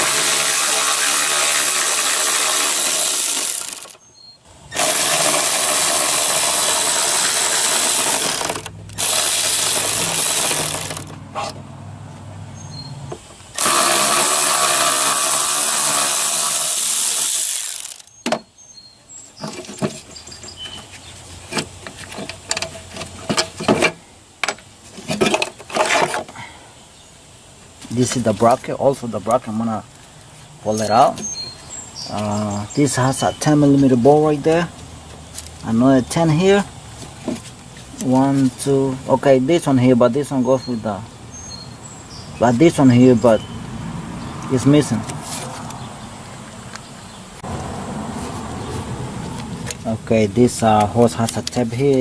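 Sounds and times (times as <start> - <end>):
tools clicking and knocking: 4.8 - 11.6, 15.8 - 18.4.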